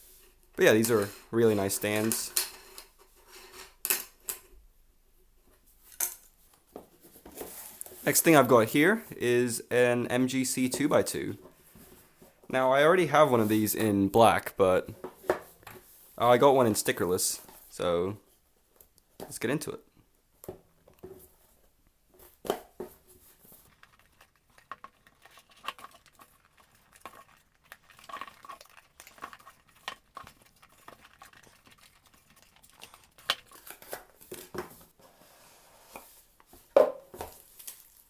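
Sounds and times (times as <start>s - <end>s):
packaging tearing and crinkling: 37.3s - 38.0s.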